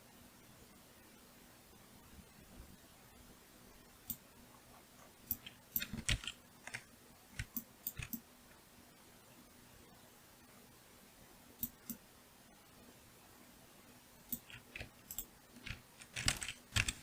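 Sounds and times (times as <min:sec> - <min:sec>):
computer mouse and keyboard clicks: 0:05.2 - 0:08.2, 0:11.6 - 0:12.0, 0:14.3 - 0:17.0.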